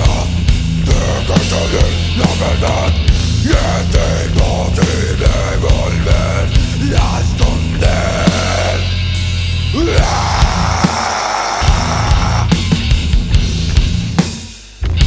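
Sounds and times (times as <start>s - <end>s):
heavy rock band playing: 0.0s - 15.0s.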